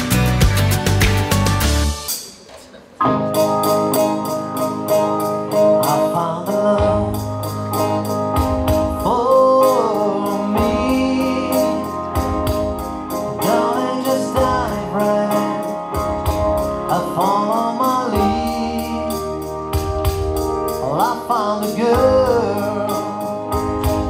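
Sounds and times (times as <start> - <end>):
slow song with guitar and singing: 3.0 - 24.0.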